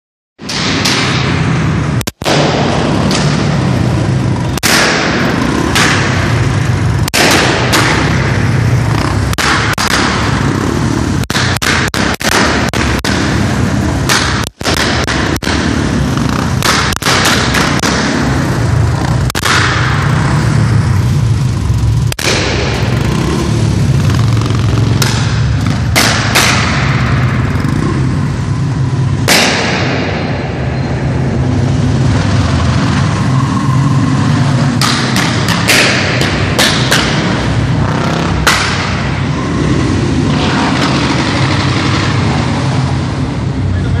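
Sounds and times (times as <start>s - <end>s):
motorcycle engine running: 1.2s - 44.0s
exhaust pops and bangs: 4.5s - 6.4s, 7.0s - 20.3s, 22.1s - 23.2s, 24.2s - 27.8s, 34.7s - 39.2s.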